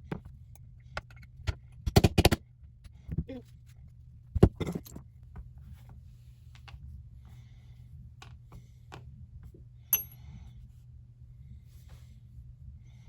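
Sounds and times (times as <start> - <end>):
steady low hum: 0.0 - 13.0
sharp ringing metallic clink: 9.9 - 10.2.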